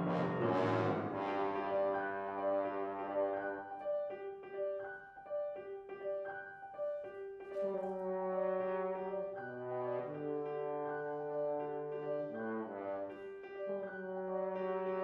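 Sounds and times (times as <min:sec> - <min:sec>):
french horn: 0:00.0 - 0:03.6, 0:07.5 - 0:15.0
piano: 0:00.0 - 0:15.0.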